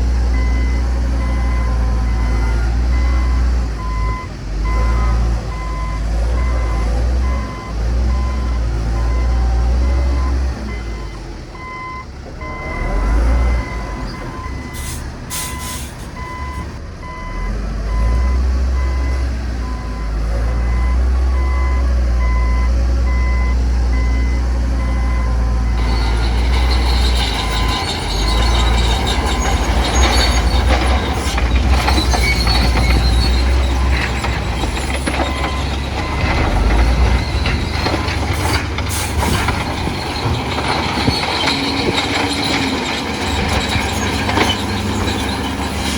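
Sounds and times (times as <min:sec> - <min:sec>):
diesel machinery engine: 0:00.0 - 0:45.9
reversing alarm beeping: 0:00.3 - 0:38.5
rattling scraping noise: 0:25.7 - 0:45.9.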